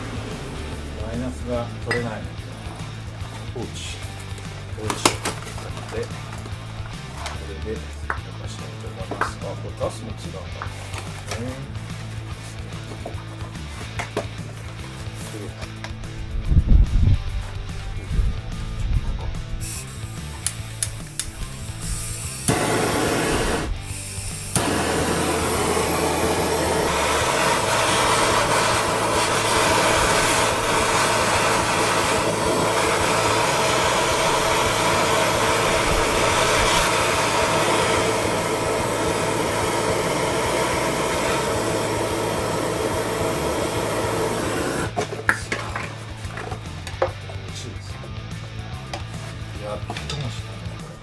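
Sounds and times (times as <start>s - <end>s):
gas torch hissing roar: 0.0s - 7.5s, 19.4s - 45.1s.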